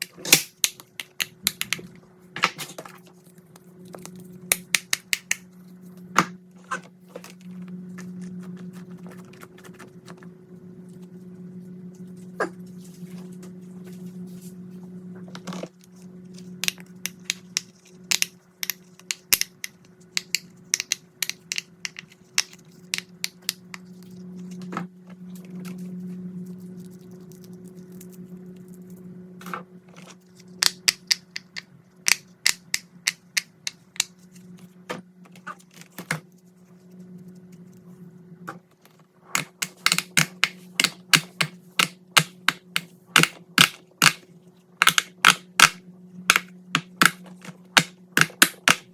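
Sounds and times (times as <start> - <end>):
steady low hum: 0.0 - 48.9.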